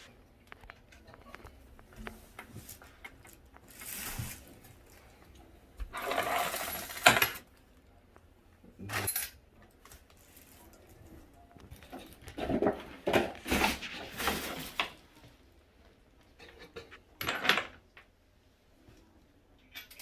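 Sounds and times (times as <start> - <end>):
hardware rustling and clinking: 0.0 - 7.7, 8.8 - 15.4, 16.2 - 18.1, 19.6 - 20.0.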